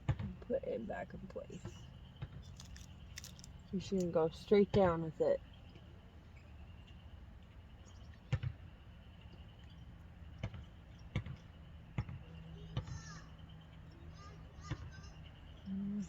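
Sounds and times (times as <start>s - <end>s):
steady low hum: 0.0s - 12.6s
small metal parts clicking: 2.5s - 3.6s.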